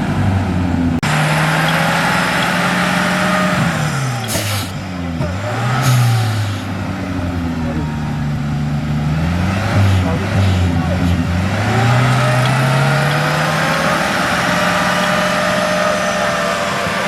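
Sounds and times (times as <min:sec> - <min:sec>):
engine running under load: 0:00.0 - 0:17.0
short hissing bursts: 0:04.2 - 0:04.8.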